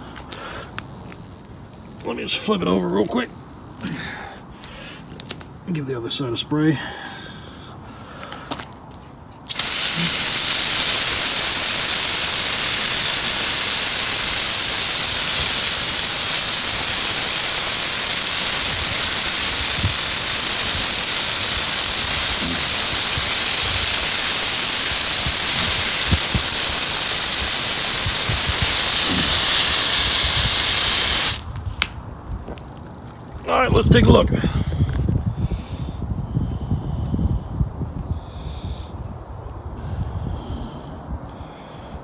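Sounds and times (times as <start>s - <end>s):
hose water spraying hiss: 9.5s - 31.5s.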